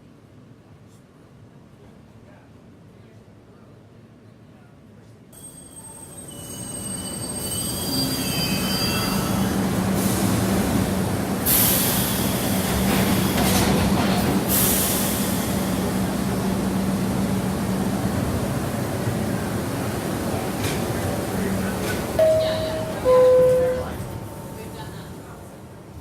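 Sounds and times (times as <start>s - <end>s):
subway train running: 0.0s - 26.0s
train wheels squealing: 5.4s - 10.4s
hiss bursts: 11.4s - 13.8s, 14.4s - 16.0s.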